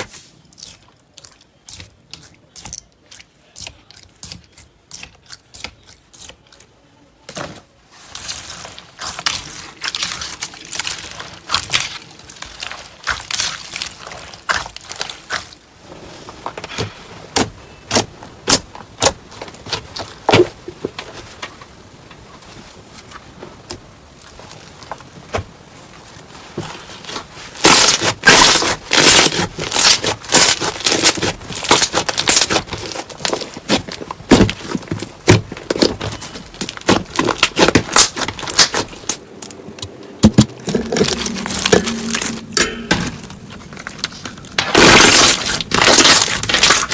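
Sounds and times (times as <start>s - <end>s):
slime crackling and popping: 8.2s - 15.6s, 27.1s - 39.6s, 43.8s - 46.9s.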